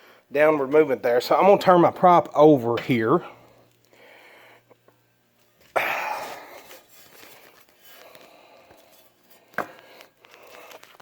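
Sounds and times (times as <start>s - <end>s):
small shuffling noises: 6.4s - 11.0s.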